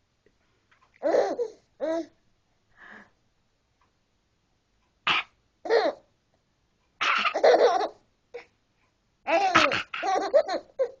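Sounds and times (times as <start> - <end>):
baby laughing: 1.0 - 2.1, 5.6 - 6.0, 7.0 - 8.0, 9.3 - 11.0.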